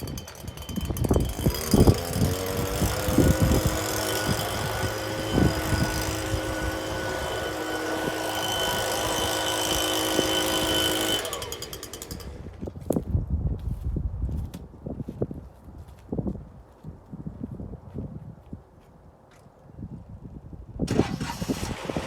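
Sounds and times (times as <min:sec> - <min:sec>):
band sawmill running: 0:00.0 - 0:12.6.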